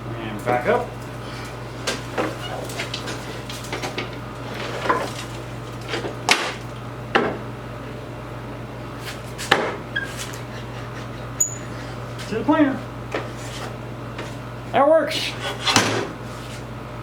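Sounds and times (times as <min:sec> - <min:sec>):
air conditioner hum: 0:00.0 - 0:17.0.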